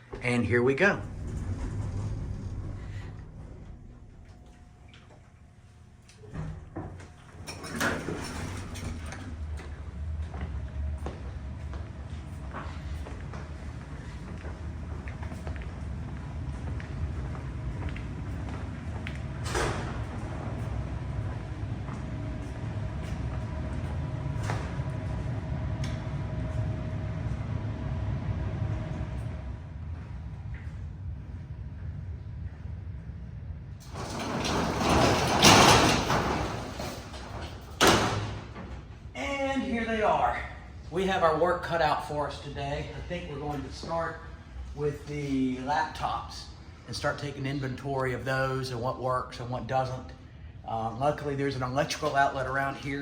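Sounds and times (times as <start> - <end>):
elevator car rumbling: 0.0 - 44.8
low steady hum: 0.0 - 53.0
door opening: 0.7 - 5.4, 6.2 - 9.8, 19.0 - 21.4, 33.8 - 39.0.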